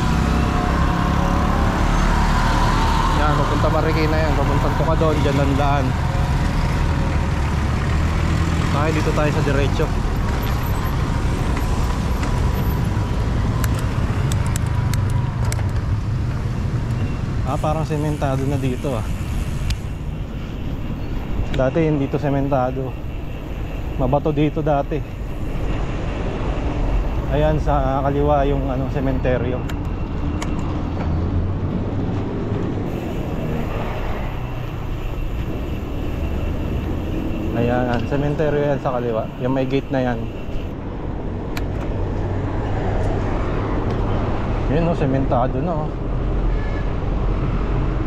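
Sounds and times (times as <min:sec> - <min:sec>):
low rumble of traffic: 0:00.0 - 0:48.0
faint steady whine: 0:32.9 - 0:40.8.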